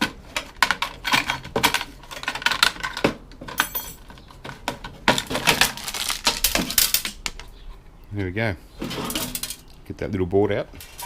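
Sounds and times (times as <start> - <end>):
tools and metal parts clinking: 0.0 - 7.5, 8.8 - 9.8.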